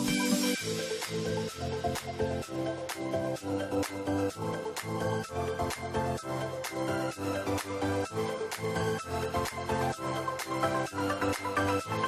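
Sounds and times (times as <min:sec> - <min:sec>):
background music with steady beat: 0:00.0 - 0:12.0.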